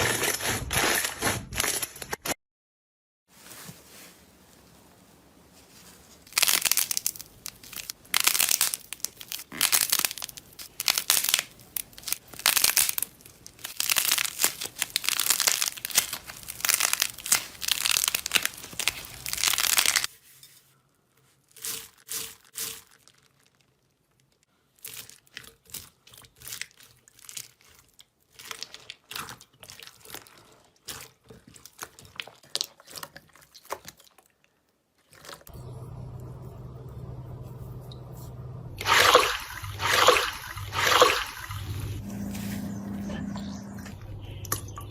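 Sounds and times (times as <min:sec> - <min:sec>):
slime crackling and popping: 0:06.3 - 0:20.1.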